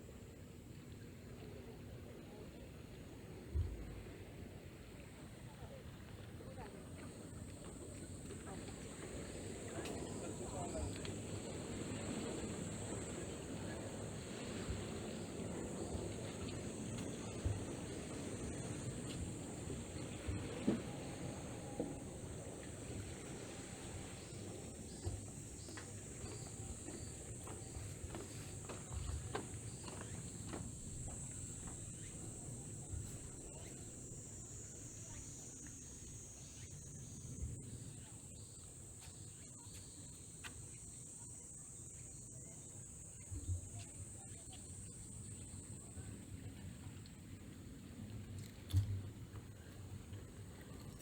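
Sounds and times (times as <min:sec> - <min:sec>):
insects chirping chorus: 0:02.3 - 0:51.0
faint ticks: 0:48.0 - 0:51.0.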